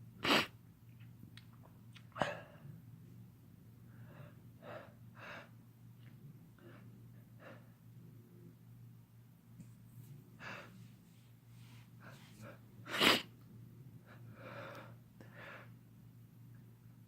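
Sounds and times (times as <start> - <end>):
heavy breaths: 10.3 - 13.0.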